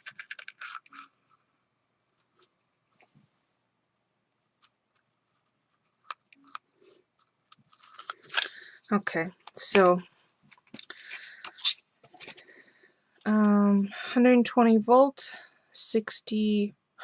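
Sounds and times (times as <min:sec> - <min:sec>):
small clicks and handling noises: 0:00.0 - 0:01.4, 0:04.4 - 0:08.6, 0:09.4 - 0:12.4.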